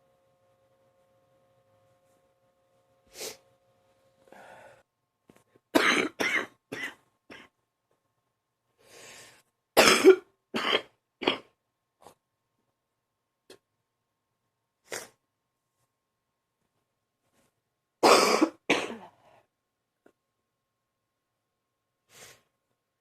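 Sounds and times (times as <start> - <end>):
person coughing: 5.8 - 7.5, 9.8 - 11.6, 18.0 - 19.3.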